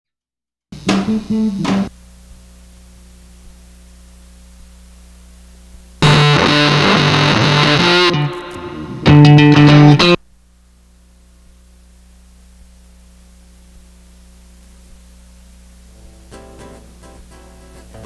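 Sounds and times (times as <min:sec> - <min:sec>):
low amplifier hum: 0:00.7 - 0:18.0
distorted electric guitar: 0:00.8 - 0:01.9, 0:06.0 - 0:10.4, 0:15.8 - 0:18.0.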